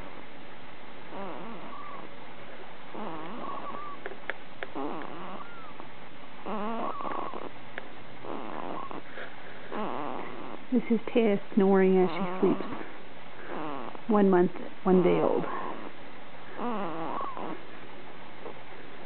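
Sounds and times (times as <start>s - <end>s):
baby snoring: 1.1s - 2.1s, 2.9s - 4.1s, 4.7s - 5.8s, 6.4s - 7.6s, 8.2s - 10.7s, 12.0s - 14.1s, 15.0s - 16.0s, 16.6s - 17.7s.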